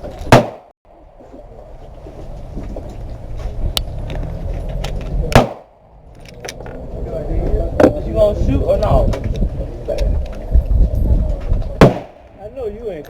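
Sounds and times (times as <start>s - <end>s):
loud gunshot: 0.3s - 0.7s, 5.3s - 5.7s, 11.8s - 12.3s.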